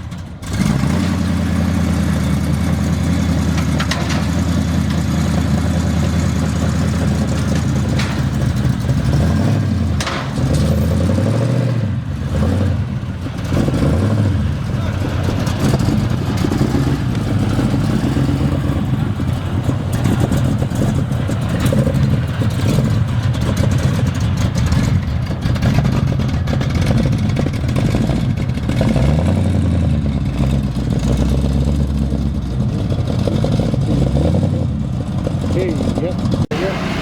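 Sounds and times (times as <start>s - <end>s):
car engine revving: 0.0s - 37.0s
car engines running loudly: 0.0s - 37.0s
crowd din: 14.3s - 22.8s.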